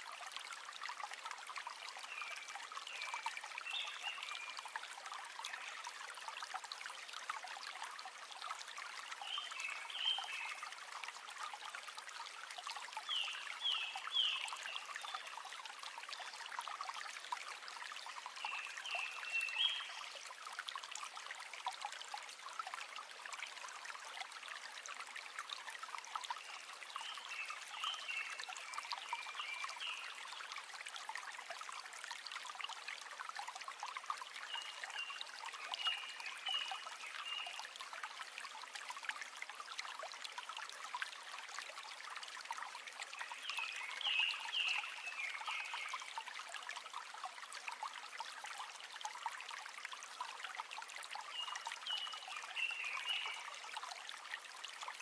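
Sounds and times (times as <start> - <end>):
river flowing and trickling: 0.0 - 55.0.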